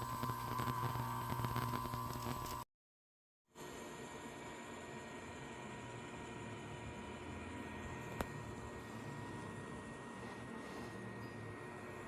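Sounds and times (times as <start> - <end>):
cooling fan hiss: 0.0 - 2.6.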